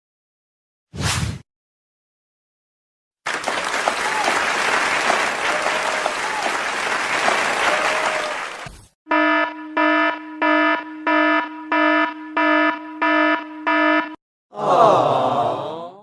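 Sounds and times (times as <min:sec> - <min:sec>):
crowd applauding and cheering: 0:03.3 - 0:08.7.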